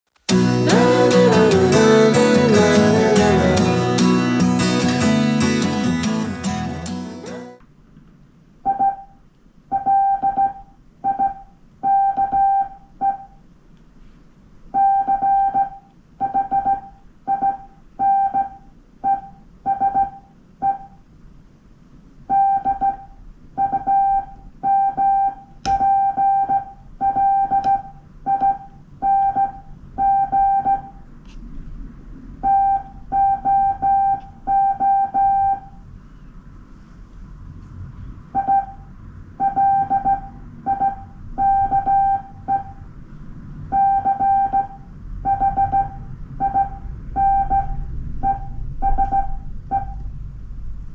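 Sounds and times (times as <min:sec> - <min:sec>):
strummed guitar music: 0:00.3 - 0:07.6
morse code beeps: 0:09.8 - 0:13.4, 0:14.8 - 0:21.0, 0:22.3 - 0:31.0, 0:32.4 - 0:35.8, 0:38.4 - 0:42.8, 0:43.8 - 0:50.0.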